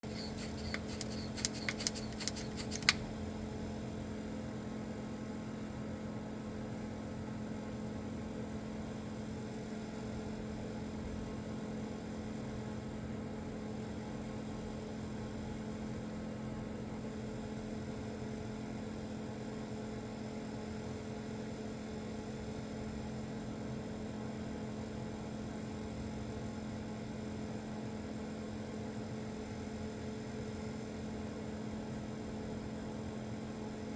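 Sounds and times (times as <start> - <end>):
sharp clicks: 0.0 - 3.1.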